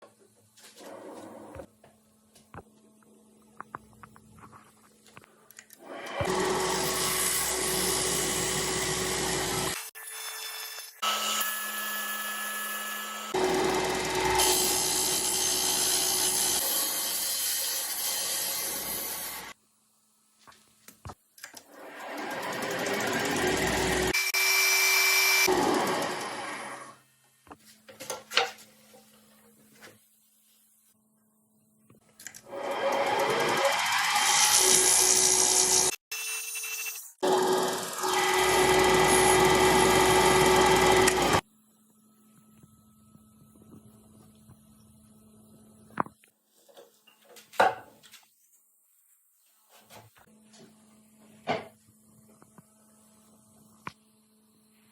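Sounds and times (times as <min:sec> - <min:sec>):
woodworking lathe running: 0:06.1 - 0:09.8, 0:13.2 - 0:17.4, 0:21.8 - 0:24.1, 0:25.2 - 0:26.9, 0:32.5 - 0:35.9, 0:37.2 - 0:41.4.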